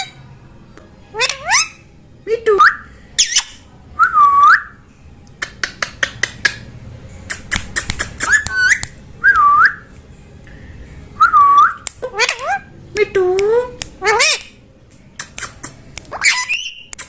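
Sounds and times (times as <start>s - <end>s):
parrot clicks and chirps: 5.4s - 6.7s, 7.3s - 9.0s, 11.7s - 14.6s, 15.2s - 17.0s.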